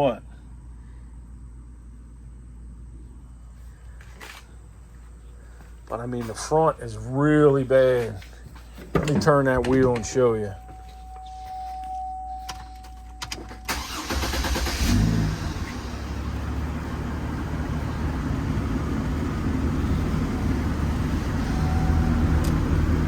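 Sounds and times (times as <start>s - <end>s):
car engine idling: 12.2s - 23.0s
car engine cranking: 12.5s - 23.0s.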